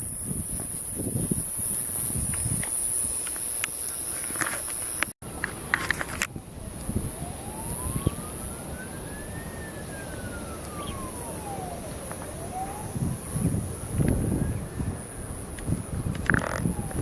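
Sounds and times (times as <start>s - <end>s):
emergency siren wailing: 5.7s - 17.0s.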